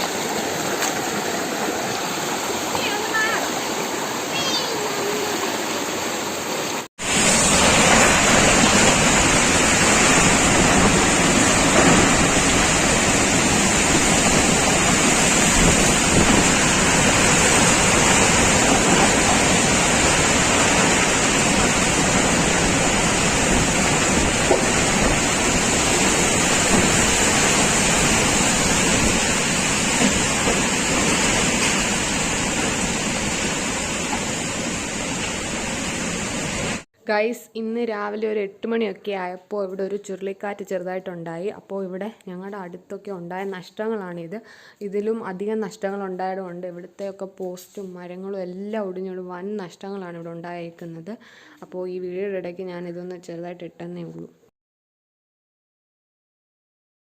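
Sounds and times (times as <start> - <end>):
waterfall rushing: 0.0 - 36.8.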